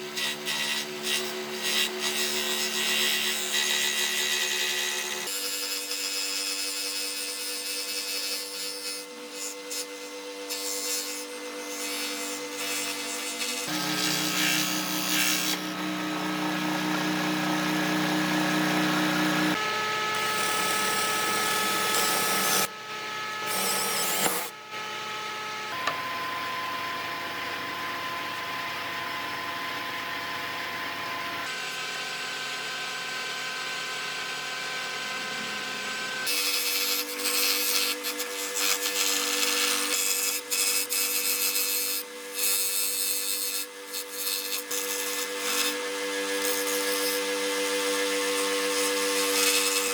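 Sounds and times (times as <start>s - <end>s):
rough cutting or sanding noise: 0.0s - 22.7s, 23.4s - 24.5s, 35.1s - 49.9s
power tool motor whine: 9.1s - 49.9s.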